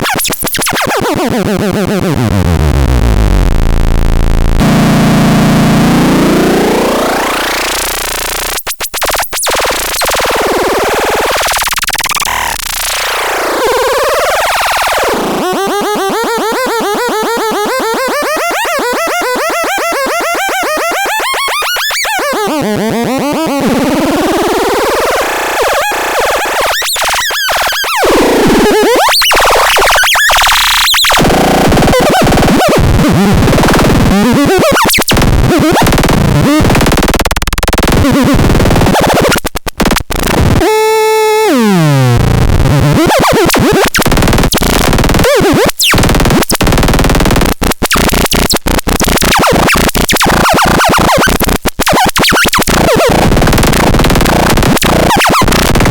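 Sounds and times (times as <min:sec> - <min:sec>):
glitchy synthesizer noise: 0:00.0 - 0:55.9
buzzing tone falling in pitch: 0:01.7 - 0:08.6
rapid clicks: 0:29.2 - 0:40.6, 0:42.5 - 0:55.9.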